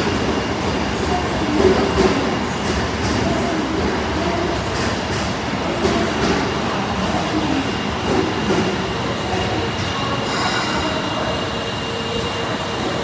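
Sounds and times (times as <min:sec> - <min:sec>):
subway train rail noise: 0:00.0 - 0:13.0
high-pitched squeal: 0:10.2 - 0:11.6.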